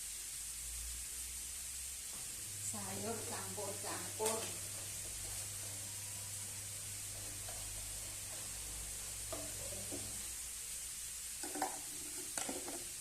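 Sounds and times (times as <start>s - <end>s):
vegetables sizzling in a wok: 0.0s - 13.0s
scraping knocks against pan: 11.4s - 12.9s.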